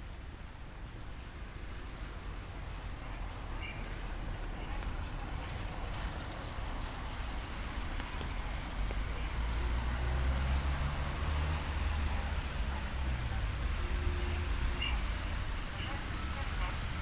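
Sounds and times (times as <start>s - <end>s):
street traffic: 0.0s - 17.0s
rain hissing: 1.2s - 17.0s
vehicle engine humming: 1.9s - 17.0s.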